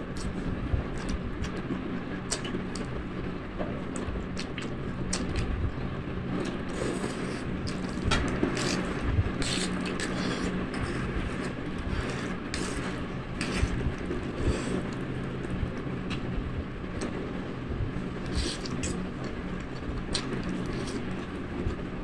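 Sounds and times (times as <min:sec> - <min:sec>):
steady low hum: 0:00.0 - 0:22.0
noodles slurped and chewed: 0:06.4 - 0:15.2, 0:18.1 - 0:21.2.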